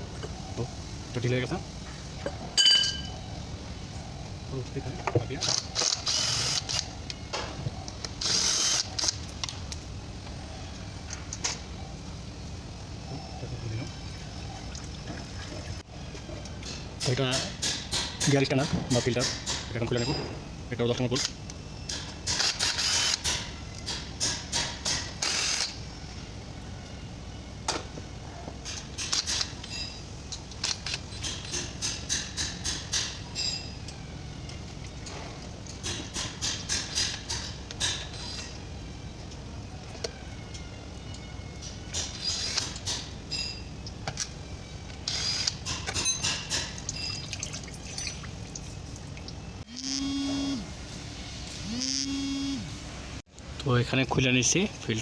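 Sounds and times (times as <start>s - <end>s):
harsh burst of tool noise: 22.3s - 23.4s, 25.0s - 25.8s.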